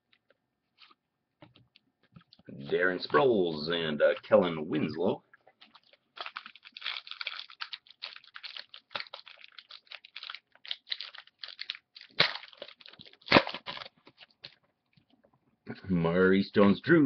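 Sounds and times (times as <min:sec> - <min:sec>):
cards flipping and rustling: 0:06.2 - 0:14.6.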